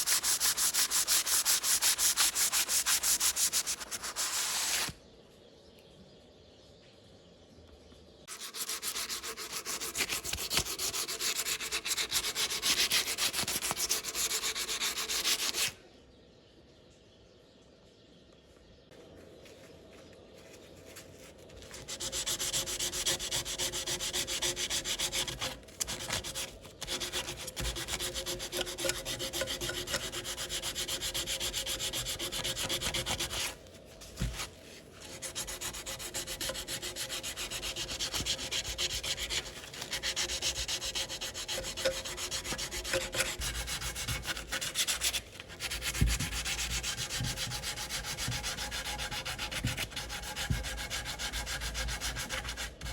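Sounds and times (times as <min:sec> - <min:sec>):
wood being sanded: 0:00.0 - 0:04.9, 0:08.3 - 0:15.7, 0:21.7 - 0:33.6, 0:35.0 - 0:52.9.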